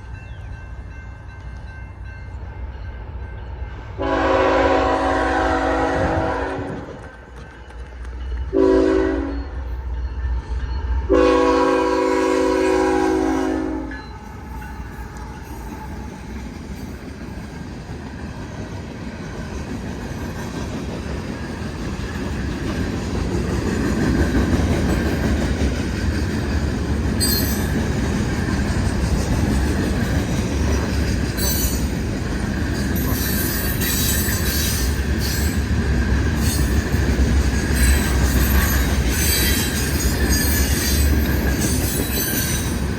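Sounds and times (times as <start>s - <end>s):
freight train rumbling past: 0.0s - 42.9s
steel wheels squealing on rails: 0.0s - 42.9s
locomotive horn blasts: 4.0s - 7.0s, 8.5s - 9.5s, 11.1s - 14.0s.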